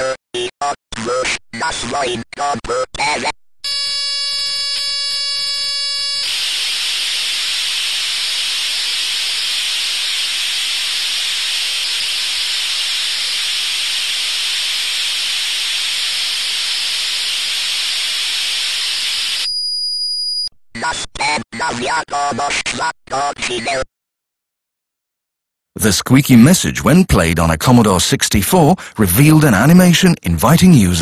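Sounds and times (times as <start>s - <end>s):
cassette data signal screeching: 2.4s - 22.5s.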